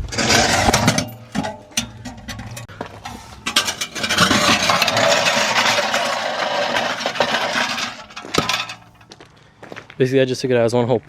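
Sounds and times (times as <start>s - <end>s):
metal clicks and knocks: 0.0s - 9.0s
metal parts scraping: 0.0s - 9.0s.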